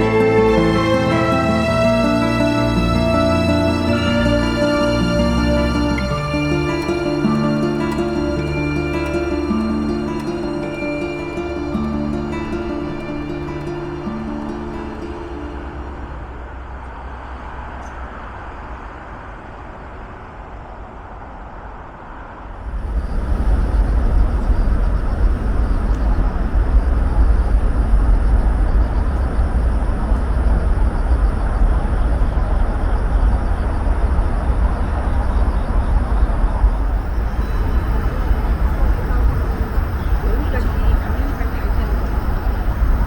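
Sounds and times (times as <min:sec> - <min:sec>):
wind noise on microphone: 0:22.1 - 0:43.0.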